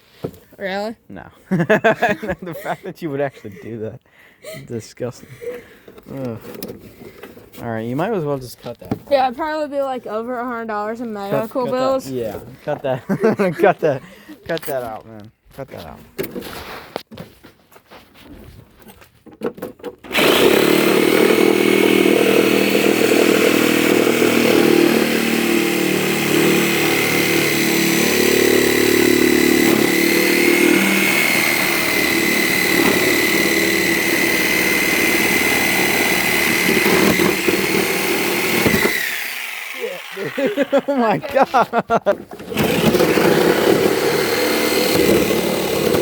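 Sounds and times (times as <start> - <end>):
power tool whining cutting plastic: 20.1 - 41.1, 42.3 - 46.0.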